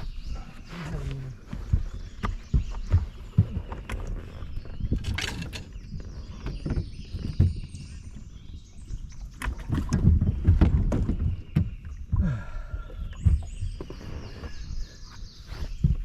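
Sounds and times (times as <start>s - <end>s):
knocks and thumps on a boat: 0.0s - 16.0s.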